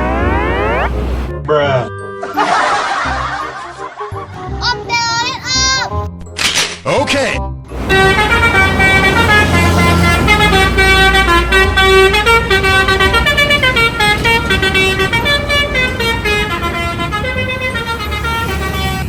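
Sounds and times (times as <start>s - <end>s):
low engine rumble: 0.0s - 1.3s
multi-tone air horn tune: 7.9s - 19.0s.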